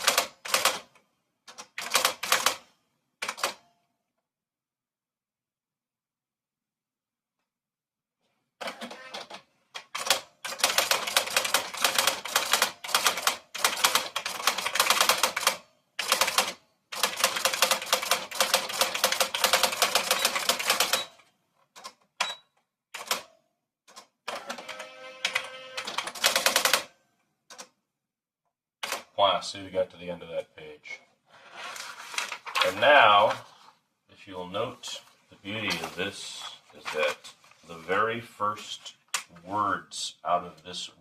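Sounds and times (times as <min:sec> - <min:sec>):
typewriter keystrokes: 0:00.0 - 0:00.8, 0:25.3 - 0:26.9
typewriter rattling: 0:00.0 - 0:00.9, 0:01.6 - 0:02.6, 0:09.8 - 0:21.0, 0:25.3 - 0:26.8.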